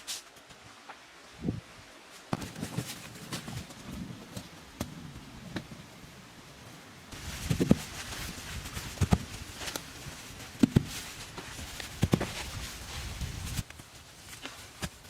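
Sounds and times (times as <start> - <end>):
rustling: 2.0 - 4.5, 7.1 - 15.0.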